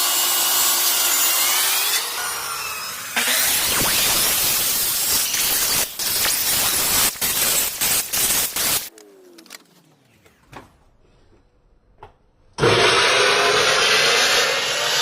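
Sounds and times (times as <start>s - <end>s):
power tool running: 0.0s - 8.9s.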